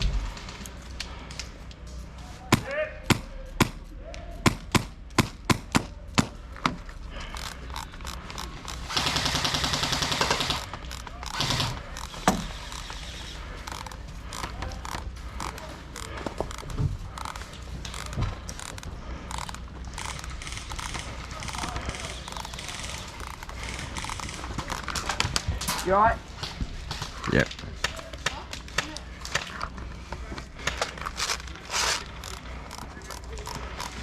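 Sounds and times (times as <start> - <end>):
airsoft gunshots: 4.4 - 6.4, 8.8 - 12.6
full-auto airsoft burst: 7.3 - 14.5.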